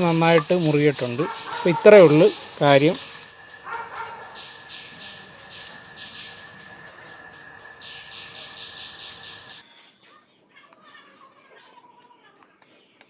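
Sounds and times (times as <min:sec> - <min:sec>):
steady high whine: 0:00.0 - 0:09.6
insects chirping: 0:00.0 - 0:13.0.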